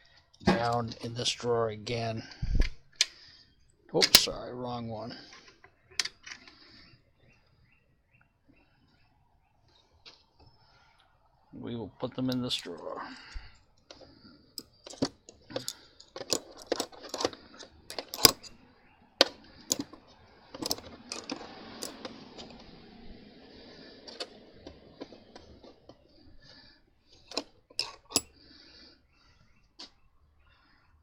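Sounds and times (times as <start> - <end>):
metal tools clinking in toolbox: 14.6 - 18.6, 19.2 - 22.6, 27.2 - 28.4.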